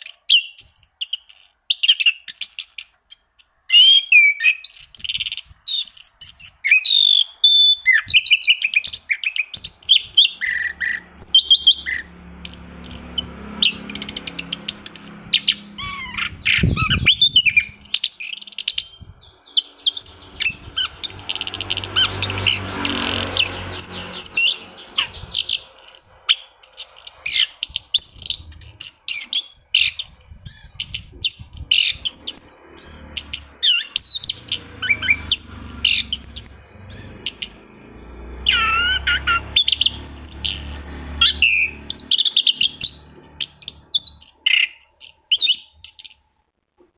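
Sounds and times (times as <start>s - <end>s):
thrush singing: 8.3s - 45.0s.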